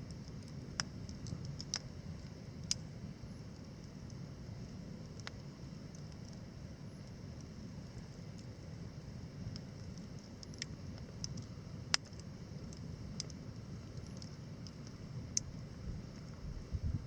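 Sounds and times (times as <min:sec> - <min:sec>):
campfire crackling and popping: 0:00.1 - 0:17.0
low rumble: 0:15.9 - 0:17.0.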